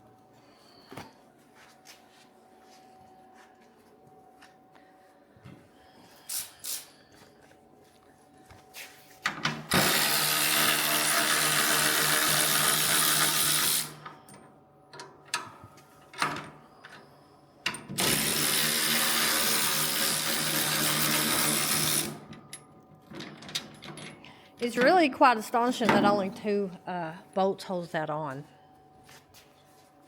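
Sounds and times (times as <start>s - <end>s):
handheld power tool running: 9.7s - 14.2s, 17.9s - 22.2s.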